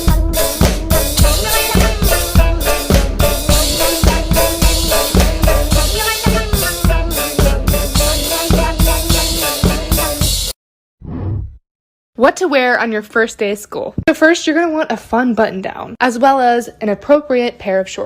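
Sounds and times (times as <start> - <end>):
drum-kit beat: 0.0 - 10.6.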